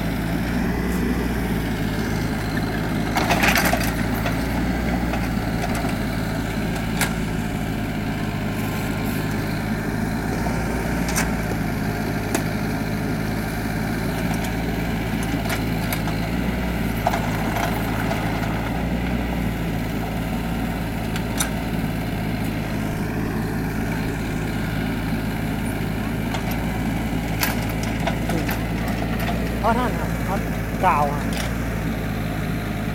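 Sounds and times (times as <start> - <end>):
excavator diesel engine running: 0.0 - 32.9.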